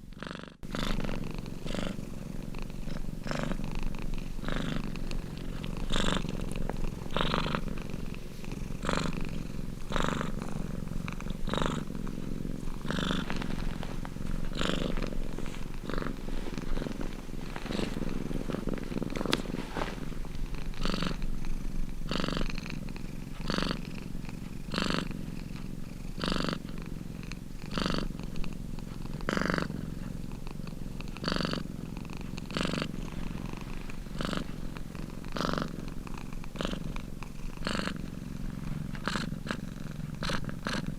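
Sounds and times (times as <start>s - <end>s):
cat purring: 0.0s - 40.9s.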